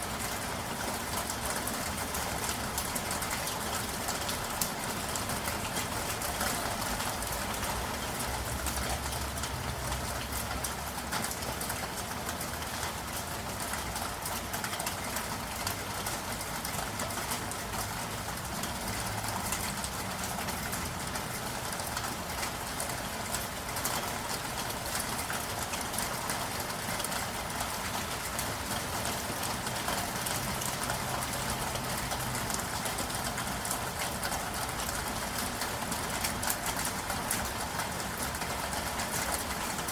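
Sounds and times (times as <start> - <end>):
city traffic rumble: 0.0 - 39.9
rain falling: 0.0 - 39.9.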